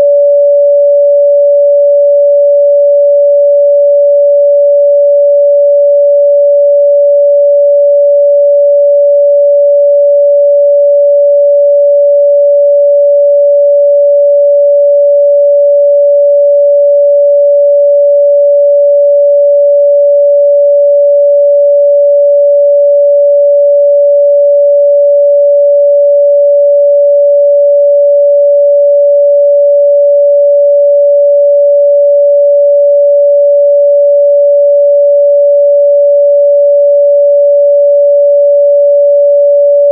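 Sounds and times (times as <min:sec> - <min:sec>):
sine wave test tone: 0:00.0 - 0:39.9.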